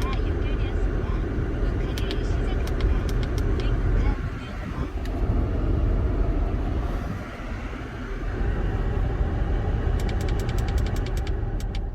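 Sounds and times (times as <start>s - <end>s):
car rumbling: 0.0s - 11.9s
rapid sharp clicks: 10.0s - 11.9s.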